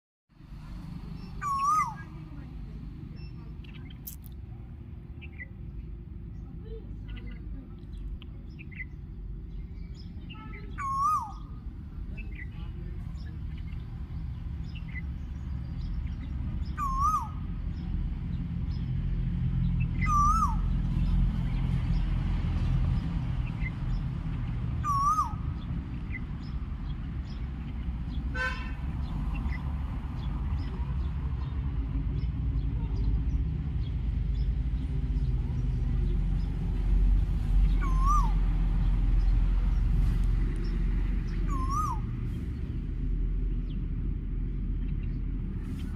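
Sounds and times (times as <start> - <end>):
small birds chirping: 0.4 - 45.9
harsh bird call: 1.2 - 2.1, 10.2 - 11.6, 16.6 - 17.4, 20.0 - 20.8, 24.8 - 25.6, 37.7 - 38.4, 41.4 - 42.1
bird calling hooked calls: 1.2 - 2.2, 10.3 - 11.6, 16.6 - 17.4, 20.0 - 20.7, 24.8 - 25.5, 37.6 - 38.4, 41.3 - 42.1.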